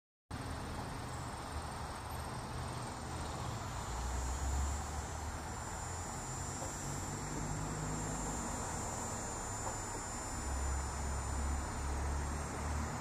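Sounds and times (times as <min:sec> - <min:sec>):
low hum: 0:00.4 - 0:13.0
high insect-like trilling: 0:02.7 - 0:13.0.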